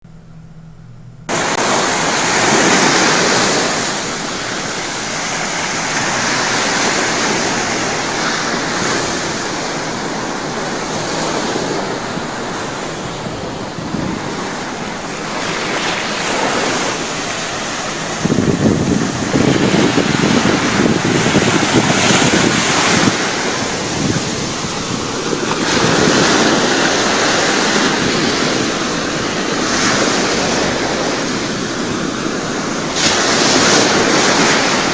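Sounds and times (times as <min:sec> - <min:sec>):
ocean surf breaking: 0:01.3 - 0:34.9
wind buffeting microphone: 0:01.3 - 0:34.9.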